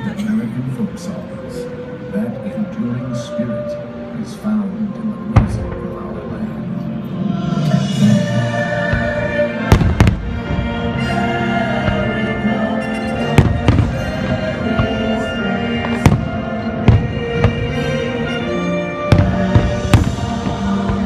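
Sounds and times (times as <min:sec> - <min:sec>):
fireworks show music: 0:00.0 - 0:21.0
fireworks bursting in sharp bangs: 0:08.8 - 0:10.8, 0:13.2 - 0:17.8, 0:19.1 - 0:21.0.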